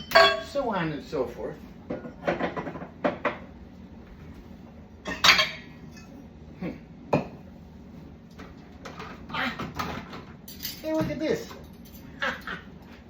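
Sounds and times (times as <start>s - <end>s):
dishes and glasses clinking: 0.0s - 0.6s, 5.0s - 6.2s, 7.1s - 7.4s
dishes clattering: 0.0s - 0.6s, 1.9s - 3.5s, 5.0s - 6.2s, 7.1s - 7.4s.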